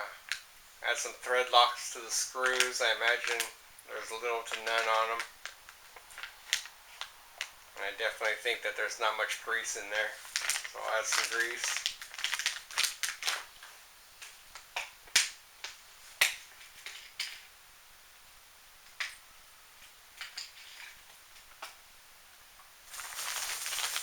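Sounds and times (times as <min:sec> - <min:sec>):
plastic packaging crinkling: 0:02.4 - 0:07.6, 0:10.0 - 0:13.8, 0:22.9 - 0:24.0.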